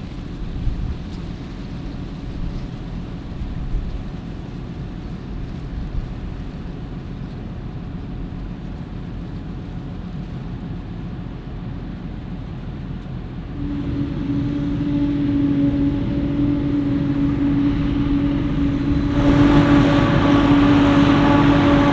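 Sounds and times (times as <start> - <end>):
farm machinery engine drone: 2.2 - 21.9.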